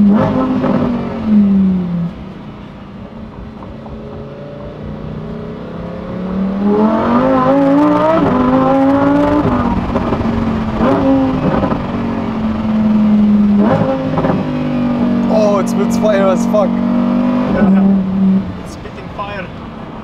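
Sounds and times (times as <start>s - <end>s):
car engine accelerating hard: 0.0s - 20.0s
sharp exhaust pops: 9.2s - 12.0s, 13.5s - 14.5s.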